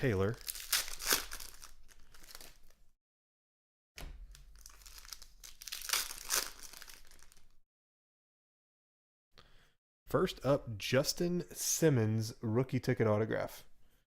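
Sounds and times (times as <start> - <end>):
foil wrappers crinkling and tearing: 0.0 - 2.8, 4.4 - 7.6.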